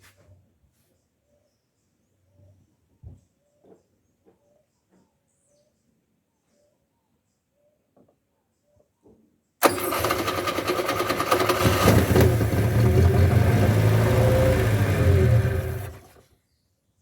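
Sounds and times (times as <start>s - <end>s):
car engine starting and running: 9.6s - 16.2s.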